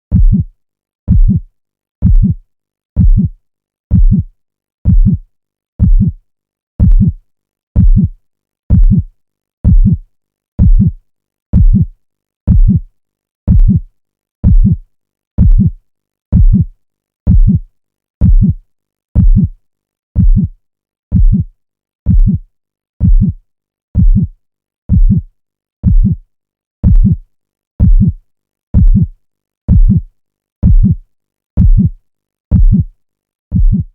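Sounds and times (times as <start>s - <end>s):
heartbeat thuds: 0.1s - 0.5s, 1.1s - 2.4s, 3.0s - 6.2s, 6.8s - 7.2s, 7.8s - 10.0s, 10.6s - 11.0s, 11.6s - 11.9s, 12.5s - 12.9s, 13.5s - 13.8s, 14.4s - 14.8s, 15.4s - 16.7s, 17.3s - 17.6s, 18.2s - 18.6s, 19.2s - 19.6s, 20.2s - 21.5s, 22.1s - 22.4s, 23.0s - 23.4s, 24.0s - 26.2s, 26.8s - 27.2s, 27.8s - 28.2s, 28.8s - 29.1s, 29.7s - 31.0s, 31.6s - 32.9s, 33.5s - 33.9s.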